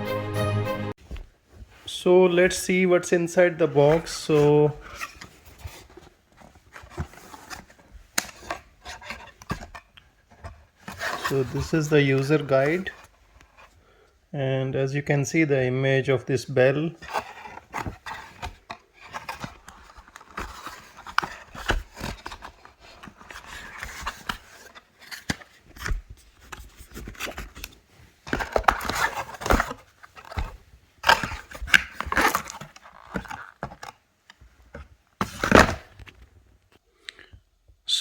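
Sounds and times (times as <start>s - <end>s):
packaging being unpacked: 17.0s - 34.1s, 35.2s - 36.2s.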